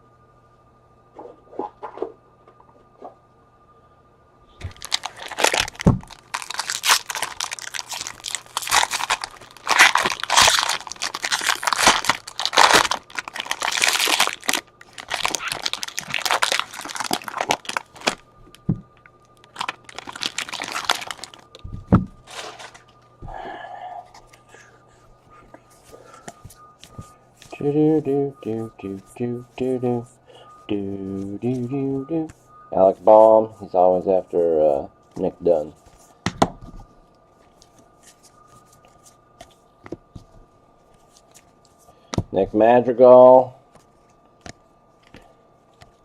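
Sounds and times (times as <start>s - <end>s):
wrapper crinkling and tearing: 4.6s - 18.6s, 19.2s - 21.6s, 22.2s - 22.9s.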